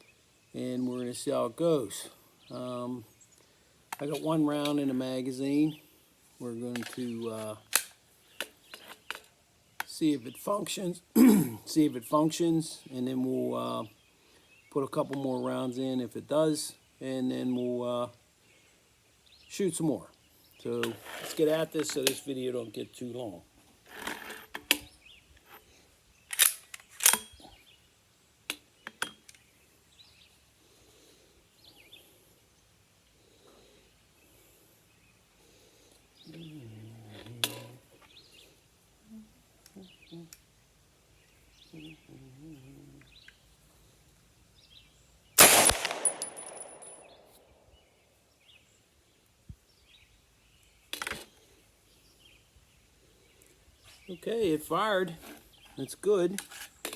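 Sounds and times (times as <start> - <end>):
metallic clicks of gun handling: 6.7 - 7.0, 7.6 - 9.9, 21.8 - 22.2, 26.3 - 27.4, 45.4 - 47.1
gunshot: 45.4 - 46.8.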